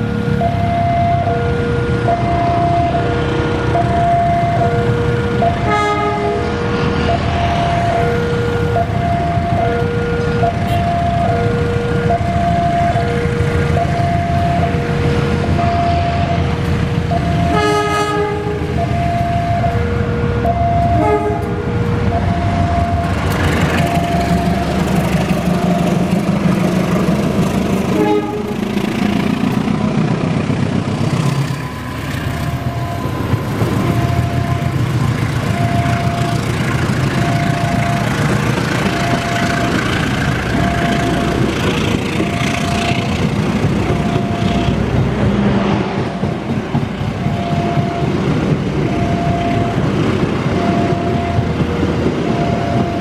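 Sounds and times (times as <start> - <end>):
passenger train rumbling past: 0.0 - 53.0
two-tone crossing warning signal: 0.0 - 53.0
train horn blasts: 5.6 - 6.7, 17.4 - 18.8, 20.8 - 21.8, 27.9 - 28.8.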